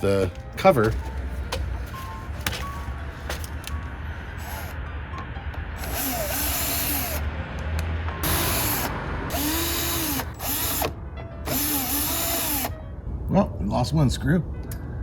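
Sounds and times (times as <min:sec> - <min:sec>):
cordless drill whirring: 0:04.4 - 0:04.8, 0:05.8 - 0:07.2, 0:08.2 - 0:10.9, 0:11.5 - 0:12.7.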